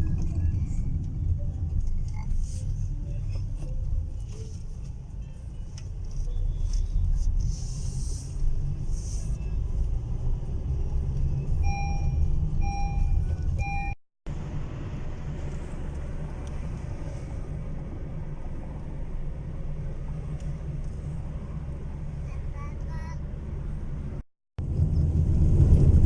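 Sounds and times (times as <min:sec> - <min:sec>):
car driving rumble: 0:00.0 - 0:26.0
short beeps: 0:11.6 - 0:14.0.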